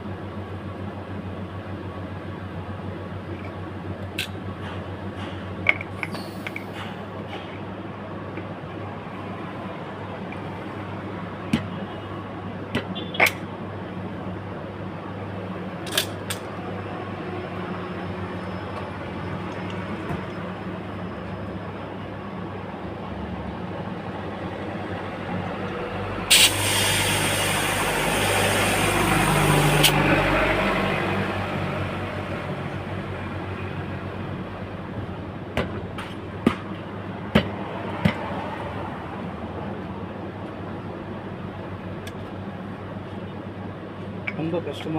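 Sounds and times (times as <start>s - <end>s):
motor vehicle passing: 24.8s - 34.0s
loud hiss: 26.3s - 30.0s.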